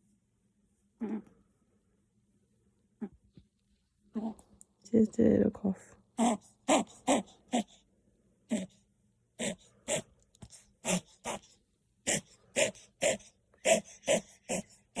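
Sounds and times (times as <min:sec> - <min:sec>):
puppy coughing: 0:01.0 - 0:01.3, 0:06.2 - 0:07.7, 0:08.5 - 0:08.8, 0:09.4 - 0:11.5, 0:12.1 - 0:15.0.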